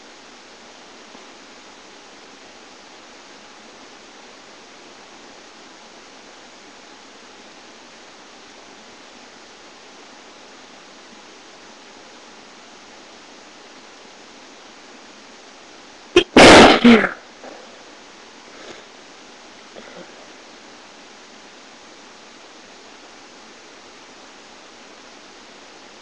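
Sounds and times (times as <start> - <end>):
microphone hiss: 0.0 - 26.0
person sneezing: 16.2 - 17.6.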